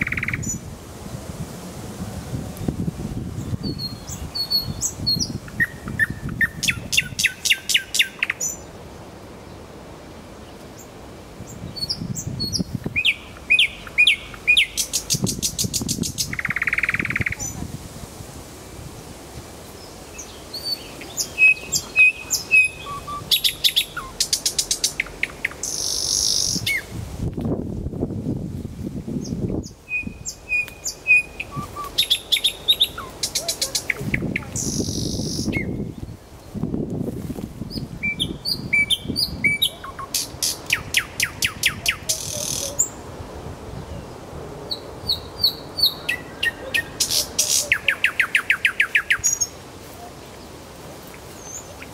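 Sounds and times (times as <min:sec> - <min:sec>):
nightingale singing: 0:00.0 - 0:00.7, 0:03.4 - 0:08.7, 0:10.5 - 0:17.6, 0:19.8 - 0:26.9, 0:29.2 - 0:36.6, 0:37.7 - 0:43.0, 0:44.7 - 0:49.6.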